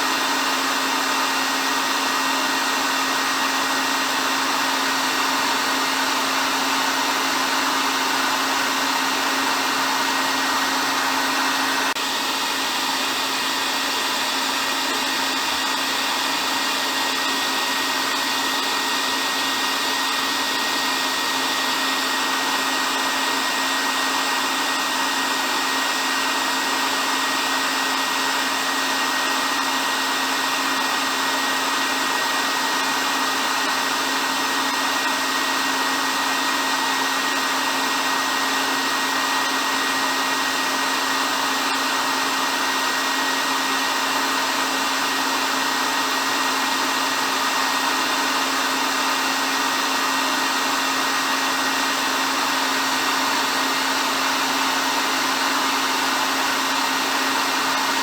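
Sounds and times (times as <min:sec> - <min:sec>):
hair dryer running: 0:00.0 - 0:58.0.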